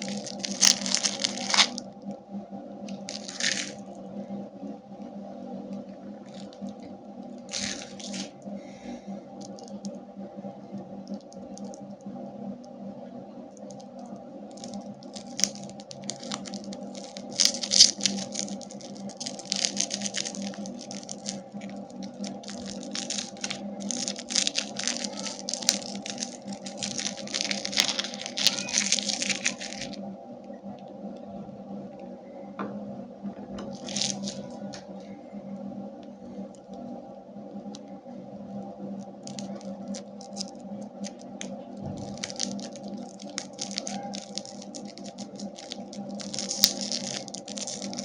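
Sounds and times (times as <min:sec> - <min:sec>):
plastic wrappers crinkling and tearing: 0:00.0 - 0:01.9, 0:02.9 - 0:03.8, 0:06.2 - 0:08.4, 0:09.4 - 0:09.9, 0:11.0 - 0:11.8, 0:13.6 - 0:30.0, 0:33.7 - 0:34.8, 0:39.0 - 0:48.0
steady low hum: 0:00.0 - 0:48.0.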